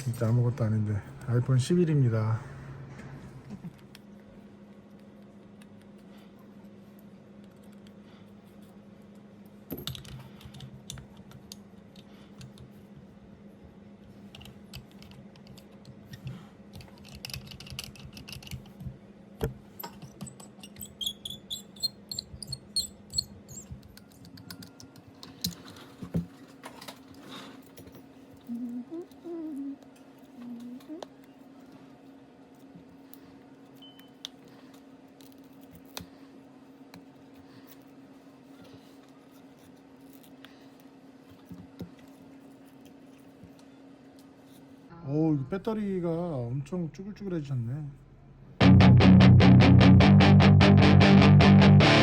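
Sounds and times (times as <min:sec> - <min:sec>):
steady low hum: 0:00.0 - 0:17.0, 0:27.6 - 0:52.0.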